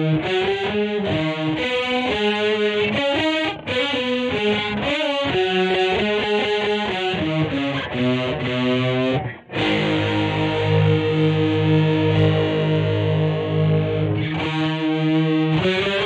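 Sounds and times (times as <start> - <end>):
distorted electric guitar: 0.0 - 16.0.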